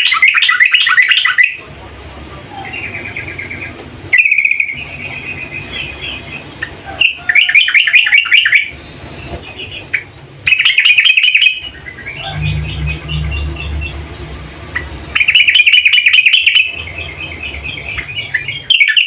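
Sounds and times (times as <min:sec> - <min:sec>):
bird chattering calls: 0:00.0 - 0:19.0
low rumble: 0:11.6 - 0:15.2.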